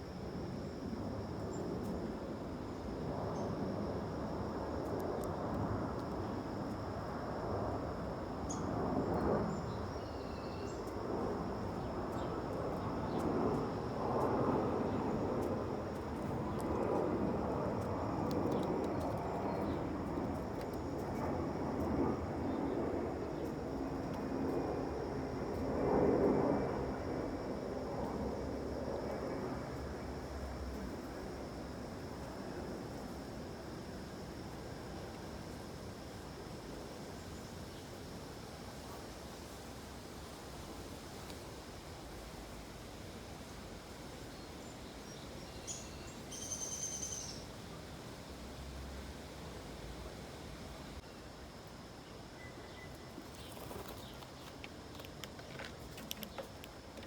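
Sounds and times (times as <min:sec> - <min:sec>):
faint bird chirps: 0:45.6 - 0:47.4, 0:52.4 - 0:54.2.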